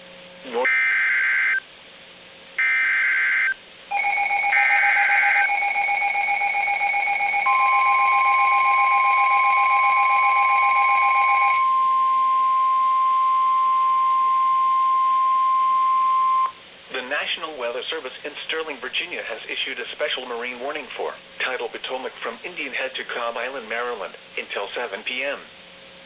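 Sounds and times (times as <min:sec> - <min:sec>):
pulsing electronic alarm: 0:00.5 - 0:01.6, 0:02.6 - 0:16.6
steady warning alarm tone: 0:00.5 - 0:01.6, 0:02.6 - 0:16.6.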